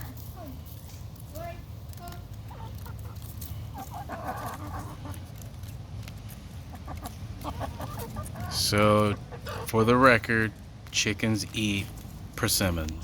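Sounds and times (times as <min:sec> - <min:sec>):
hens clucking softly: 0:02.5 - 0:05.4, 0:06.7 - 0:09.8.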